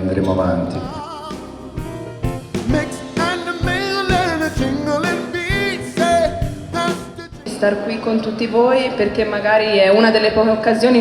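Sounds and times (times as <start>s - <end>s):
instrumental backing music: 0.0s - 7.9s
person singing: 0.8s - 1.5s, 2.6s - 7.6s.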